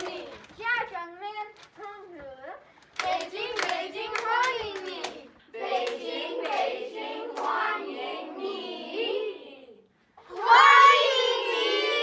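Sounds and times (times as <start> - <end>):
children chanting: 0.0 - 0.5, 3.0 - 12.0
hand claps: 2.9 - 6.7.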